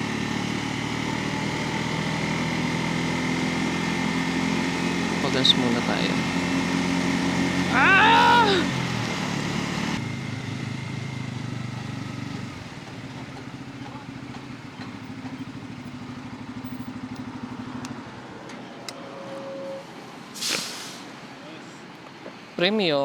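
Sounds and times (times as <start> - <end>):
motorcycle engine idling: 0.0 - 18.2.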